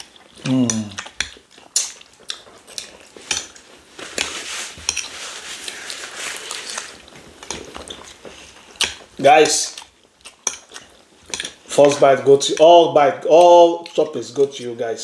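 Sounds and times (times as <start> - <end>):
spoons clinking against plates: 4.2 - 5.8.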